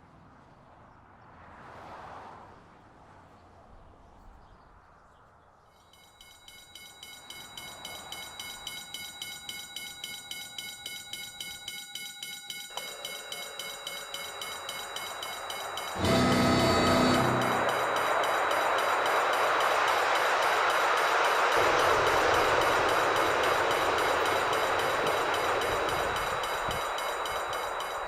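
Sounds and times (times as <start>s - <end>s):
level-crossing warning bell: 5.8s - 28.0s
steady tone: 6.0s - 28.0s.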